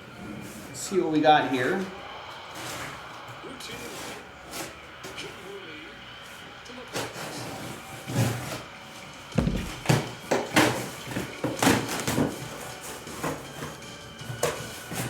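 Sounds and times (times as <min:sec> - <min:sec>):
cardboard boxes knocking: 0:09.4 - 0:10.1.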